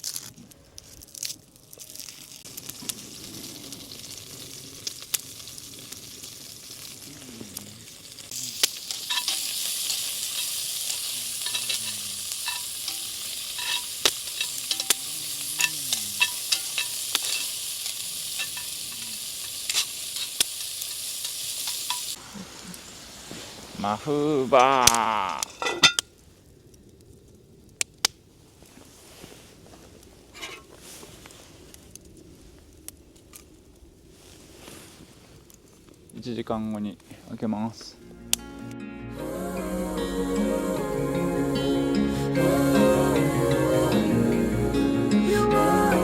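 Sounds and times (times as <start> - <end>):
ribs sizzling in a pot: 1.1 - 26.0.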